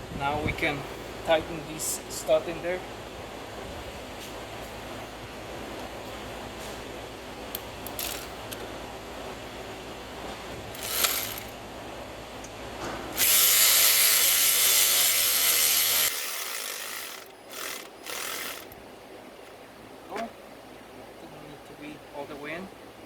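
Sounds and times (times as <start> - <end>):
power tool running: 10.7 - 11.6, 13.1 - 18.8.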